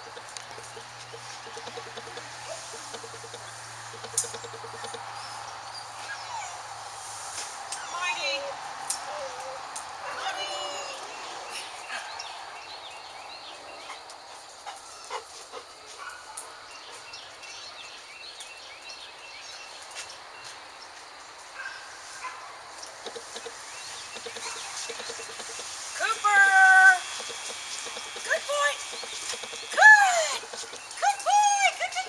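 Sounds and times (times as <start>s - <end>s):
birds chirping: 0.0s - 7.0s, 16.0s - 32.0s.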